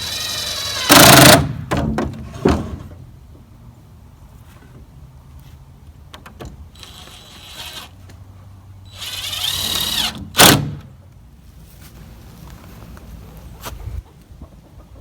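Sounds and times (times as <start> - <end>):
power drill motor whine: 0.0 - 1.3, 8.9 - 10.5.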